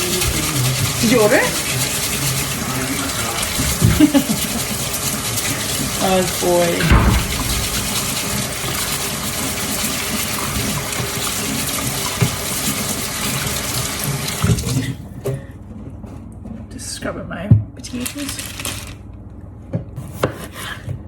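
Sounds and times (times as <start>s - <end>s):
tap running into sink: 0.0s - 14.8s.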